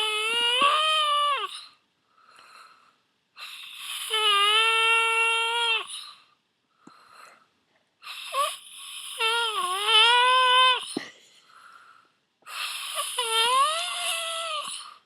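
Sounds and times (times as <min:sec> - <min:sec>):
person snoring: 0:00.0 - 0:01.7, 0:03.4 - 0:06.2, 0:08.1 - 0:11.0, 0:12.5 - 0:15.0.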